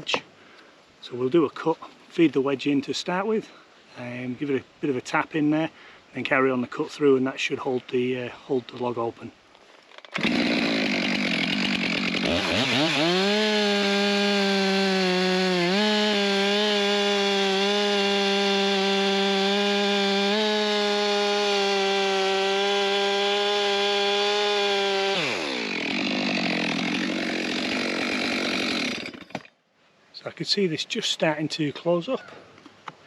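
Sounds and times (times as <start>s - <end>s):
chainsaw cutting log: 9.8s - 29.5s.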